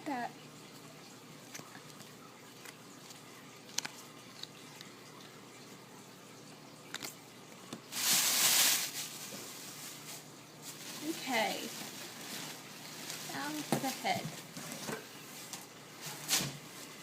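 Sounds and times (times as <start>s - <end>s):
packaging rustling: 7.8s - 16.6s.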